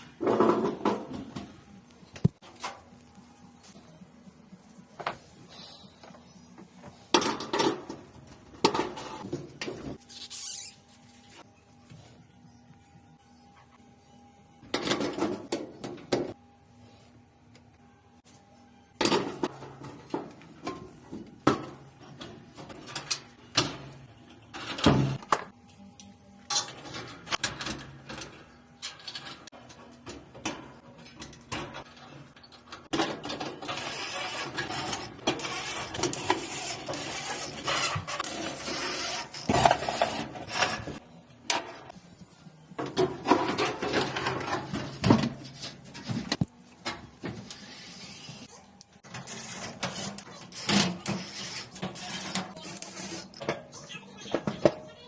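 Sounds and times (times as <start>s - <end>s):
scraping and rattling: 26.6s - 41.7s.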